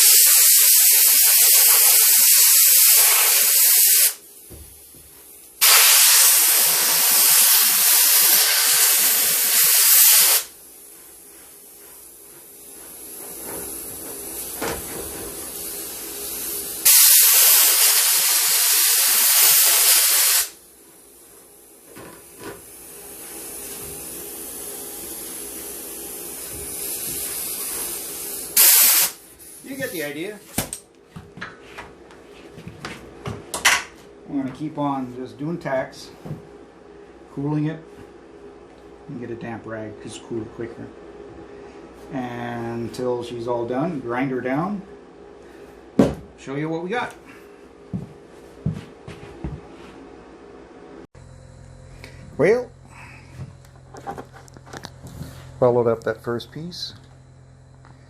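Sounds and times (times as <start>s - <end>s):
welder hissing: 0.0s - 20.6s, 21.6s - 30.4s.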